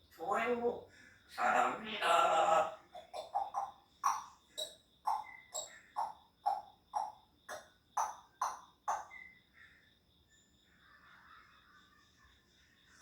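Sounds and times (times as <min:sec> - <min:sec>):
parrot making popping sounds: 0:03.0 - 0:09.3.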